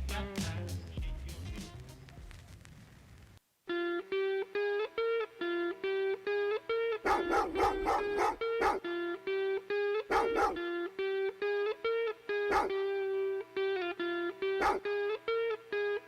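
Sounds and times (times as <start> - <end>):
hip-hop beat: 0.0 - 2.2
dog barks: 7.0 - 8.9, 10.1 - 10.6, 12.5 - 12.8, 14.6 - 14.9
plucked-string melody: 7.8 - 16.0.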